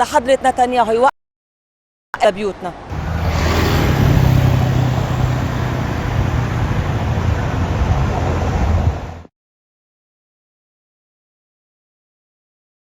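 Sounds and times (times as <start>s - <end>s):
traffic noise: 2.7s - 9.3s
low hum: 2.9s - 7.7s
vehicle engine running: 2.9s - 7.7s.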